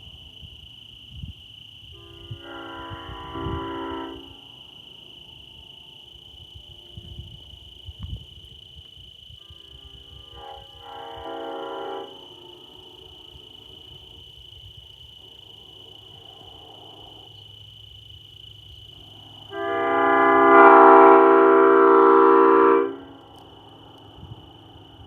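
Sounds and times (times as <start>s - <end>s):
locomotive air horn chord: 1.9s - 8.0s, 9.3s - 14.2s, 19.4s - 23.4s.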